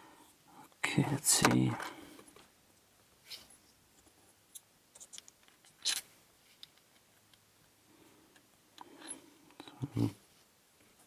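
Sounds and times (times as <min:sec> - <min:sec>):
soft rustle: 0:01.8 - 0:04.4.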